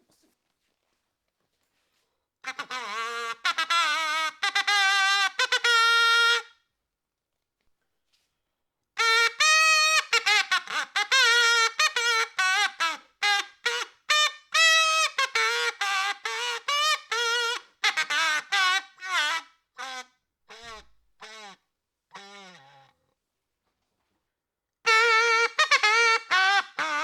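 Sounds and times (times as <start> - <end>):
toy trumpet toots: 2.4 - 6.5, 9.0 - 22.9, 24.9 - 27.0.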